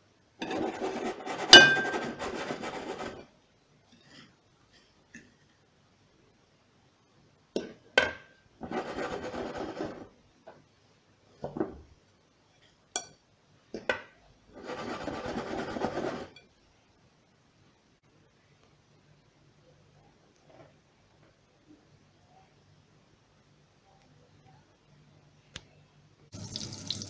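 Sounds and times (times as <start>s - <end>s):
rasping scraping: 0.5s - 3.2s, 8.6s - 10.1s, 14.6s - 16.3s.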